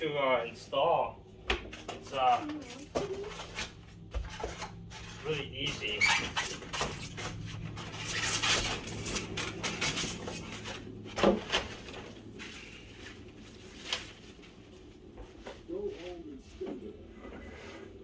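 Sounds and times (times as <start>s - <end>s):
lamp parts clattering and rubbing: 1.7s - 14.5s.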